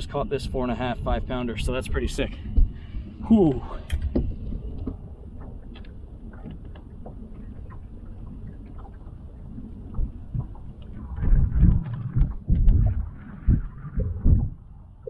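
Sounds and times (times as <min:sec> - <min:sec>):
wind rumbling on microphone: 0:00.0 - 0:15.0
low thumps: 0:02.3 - 0:02.9, 0:09.6 - 0:15.0.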